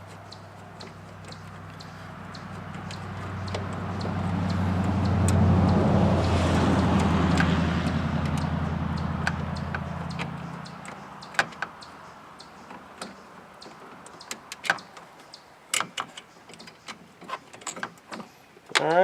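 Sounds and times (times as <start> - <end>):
low engine hum: 0.0 - 15.6.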